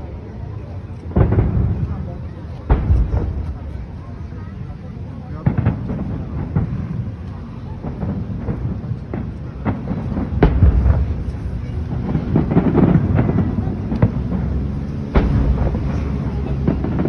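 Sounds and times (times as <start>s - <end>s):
fireworks bursting: 0.0s - 17.0s
low rumble: 9.7s - 17.0s.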